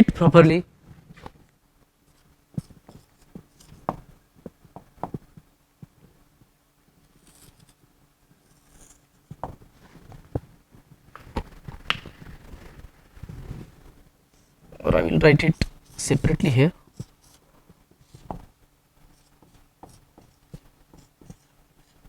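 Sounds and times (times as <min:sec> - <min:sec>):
pen writing on paper: 0:19.1 - 0:22.0.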